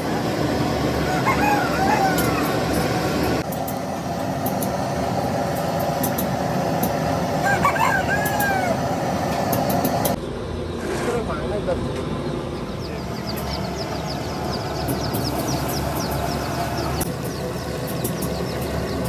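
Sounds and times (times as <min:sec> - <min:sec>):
bird calling: 0:00.0 - 0:03.4, 0:07.4 - 0:10.2, 0:11.8 - 0:19.0
workshop background noise: 0:00.0 - 0:19.0.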